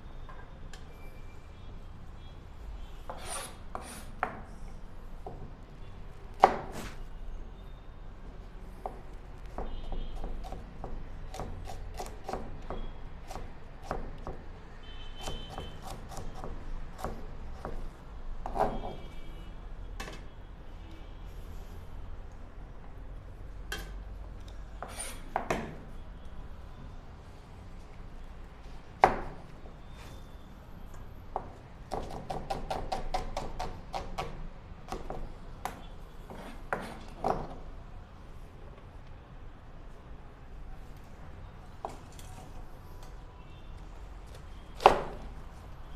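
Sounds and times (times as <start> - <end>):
knife chopping on cutting board: 6.4 - 7.0.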